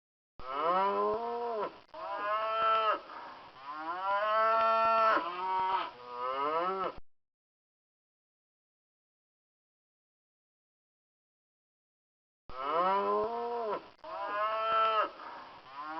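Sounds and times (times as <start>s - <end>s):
cows mooing: 3.6s - 7.0s, 12.5s - 15.9s.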